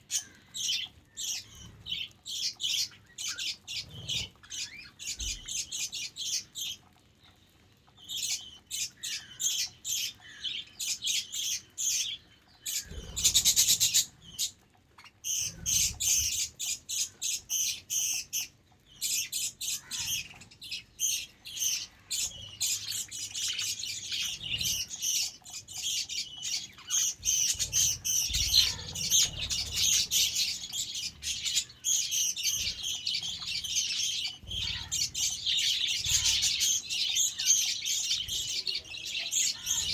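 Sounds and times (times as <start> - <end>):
budgerigars chirping: 0.1 - 6.8, 8.0 - 39.9.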